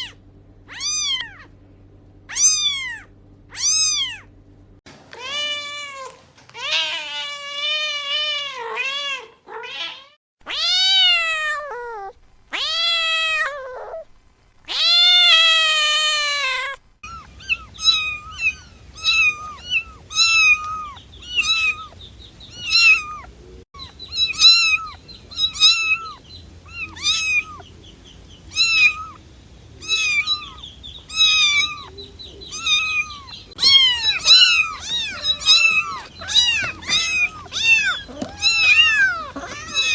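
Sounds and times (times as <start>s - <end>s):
faint background hum: 0.0s - 39.9s
cat long drawn-out meows: 5.2s - 14.0s, 14.7s - 22.0s, 32.5s - 39.9s.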